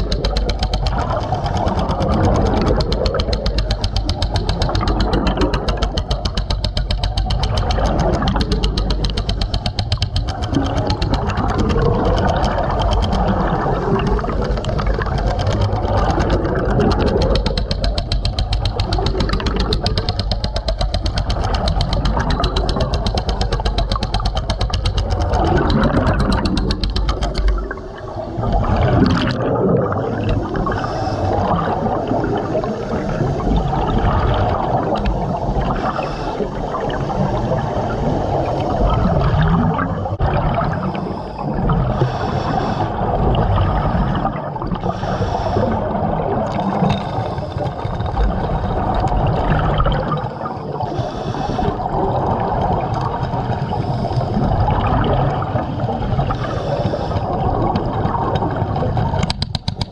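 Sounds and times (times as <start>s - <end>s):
water gurgling underwater: 0.0s - 59.9s
hissing bubble surges: 10.2s - 18.0s, 25.2s - 59.2s.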